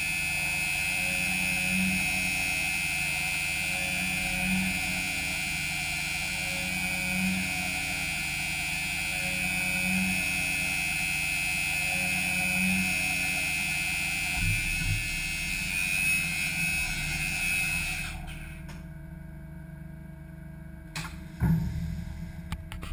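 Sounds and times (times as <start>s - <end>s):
milling spindle high whine: 0.0s - 19.5s
low machine hum: 0.0s - 22.9s.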